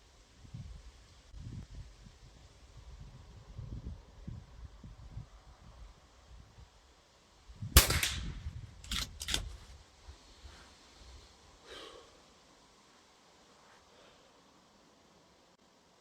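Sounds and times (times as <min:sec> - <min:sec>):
air rifle shot: 0:07.8 - 0:09.4
sharp clicks: 0:07.8 - 0:09.6.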